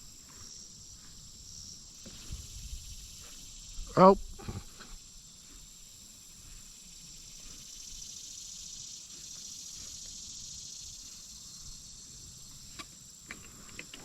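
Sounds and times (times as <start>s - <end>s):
insects droning: 0.0s - 14.0s.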